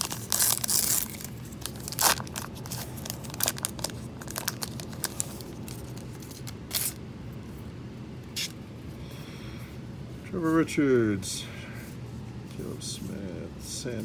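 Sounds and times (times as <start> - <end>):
wrapper crinkling: 0.0 - 7.0
wrapper tearing open: 0.0 - 7.0.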